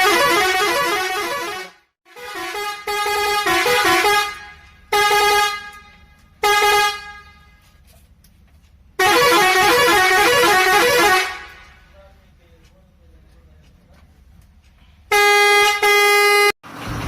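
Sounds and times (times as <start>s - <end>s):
truck horn blasts: 0.0s - 7.8s, 9.0s - 11.9s, 15.1s - 16.6s.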